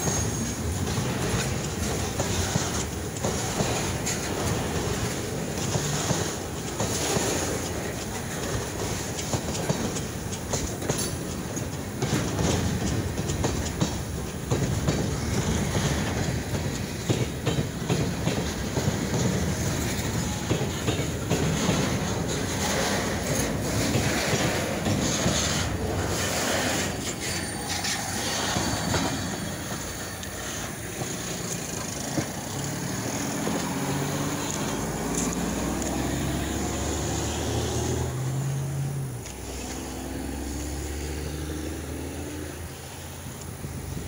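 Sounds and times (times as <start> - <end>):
train wheels clattering over rails: 0.0 - 44.0
diesel engine rumble: 7.5 - 44.0
wheel squeal: 21.6 - 33.5.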